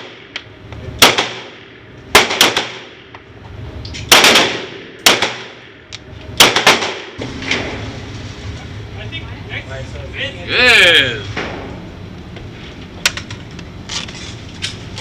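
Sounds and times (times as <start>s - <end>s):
pistol shots: 1.0s - 3.0s, 4.1s - 5.8s, 6.4s - 7.2s.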